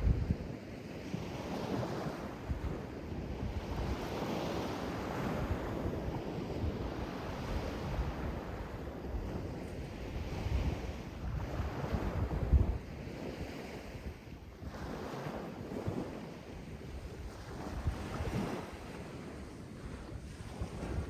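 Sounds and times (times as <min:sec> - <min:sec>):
sea waves washing on shore: 0:00.0 - 0:21.0
wind buffeting microphone: 0:00.0 - 0:21.0.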